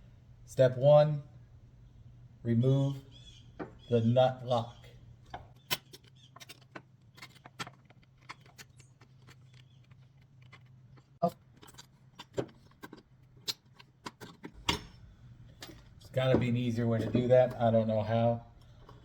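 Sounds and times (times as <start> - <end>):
steady low hum: 0.0 - 6.3, 14.4 - 19.0
metal tools clicking and clinking: 5.5 - 17.6.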